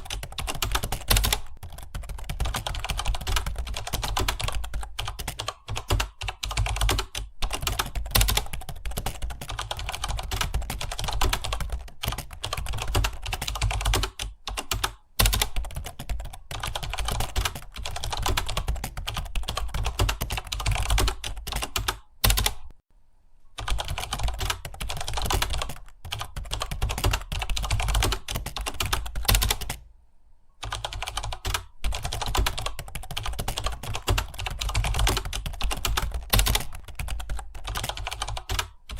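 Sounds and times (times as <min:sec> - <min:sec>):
fast typing on a keyboard: 0:00.0 - 0:22.7, 0:23.6 - 0:29.8, 0:30.6 - 0:38.9.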